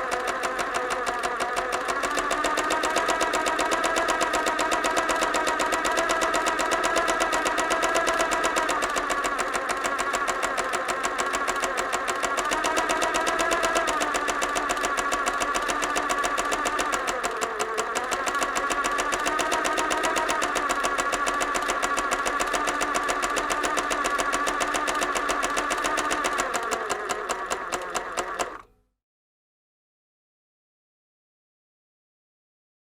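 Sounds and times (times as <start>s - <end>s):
electric sewing machine running: 0.0s - 28.7s.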